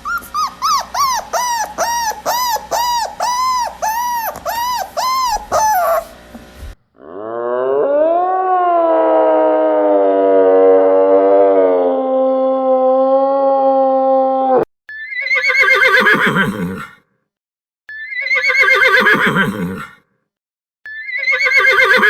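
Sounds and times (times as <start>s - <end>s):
animal howl: 0.0s - 6.2s, 7.0s - 14.7s
animal yelping cries: 0.0s - 6.2s, 14.9s - 17.0s, 17.9s - 20.0s, 20.9s - 22.0s.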